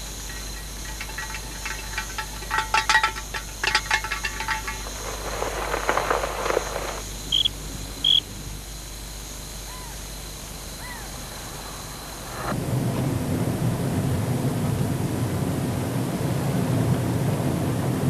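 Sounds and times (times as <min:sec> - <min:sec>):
rattling: 0:00.0 - 0:07.0
low steady rumble: 0:00.0 - 0:08.6.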